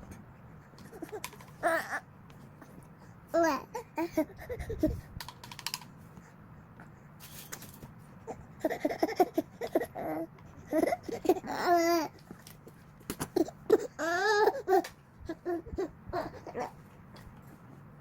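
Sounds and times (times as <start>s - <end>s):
baby babbling: 0.9s - 2.0s, 3.3s - 4.9s, 8.3s - 12.2s, 13.4s - 16.8s
baby whiny cries: 0.9s - 2.1s, 8.3s - 12.2s, 13.4s - 16.8s.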